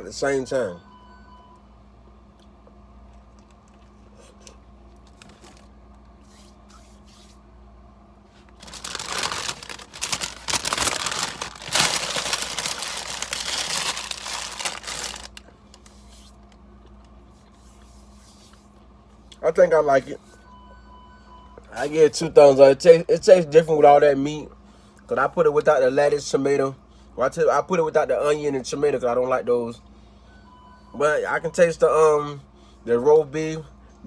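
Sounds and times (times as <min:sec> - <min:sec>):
steady low hum: 0:00.0 - 0:34.0
sandwich wrapper crinkling: 0:03.4 - 0:06.4, 0:08.3 - 0:17.2.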